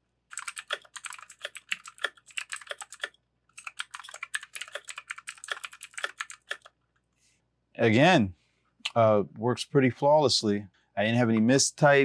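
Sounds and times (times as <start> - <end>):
clicky mechanical keyboard typing: 0.3 - 6.8.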